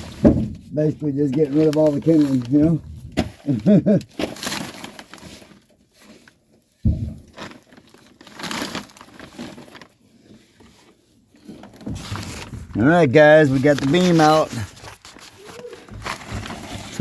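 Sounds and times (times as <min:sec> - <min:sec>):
wood scraps rustling and scraping: 0:00.0 - 0:17.0
sharp knock: 0:06.9 - 0:07.3.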